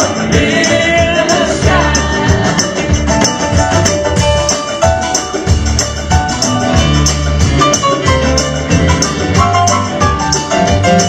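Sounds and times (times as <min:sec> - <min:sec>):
instrumental band music: 0:00.0 - 0:11.0.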